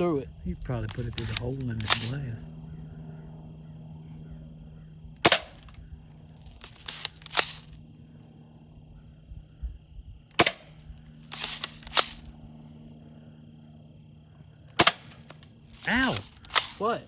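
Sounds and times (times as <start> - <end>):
clicks and rattles: 0.7 - 2.2, 6.4 - 7.8, 11.3 - 12.3, 14.8 - 17.0
bb gun shot crack: 5.2 - 5.7.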